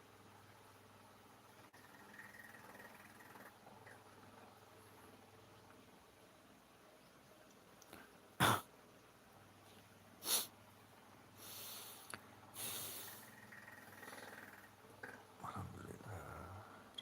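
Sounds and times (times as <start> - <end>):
person sneezing: 8.4 - 8.7.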